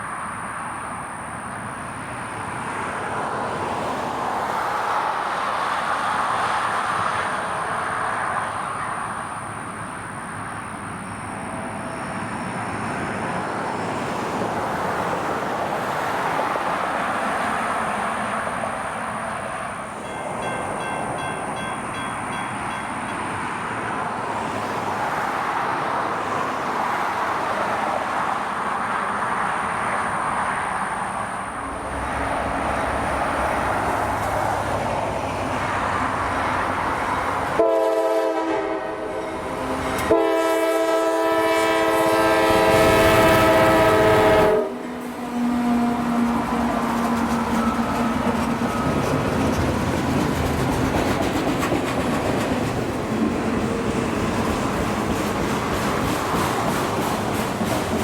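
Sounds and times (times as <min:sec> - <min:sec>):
train wheels on rails: 0:01.2 - 0:58.0
locomotive horn blasts: 0:37.6 - 0:46.1.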